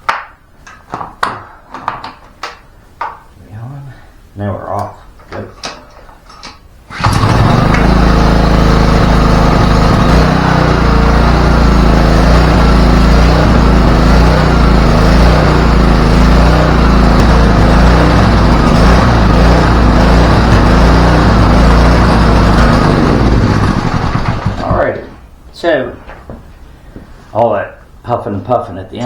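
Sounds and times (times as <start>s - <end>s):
pressure washer engine running: 6.9s - 25.2s.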